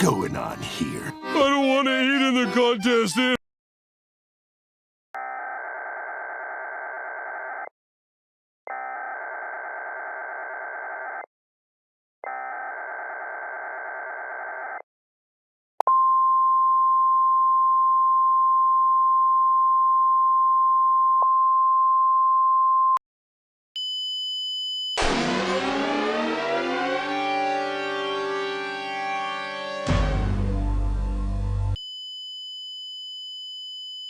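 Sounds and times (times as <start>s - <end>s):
steady alarm tone: 25.0s - 30.8s.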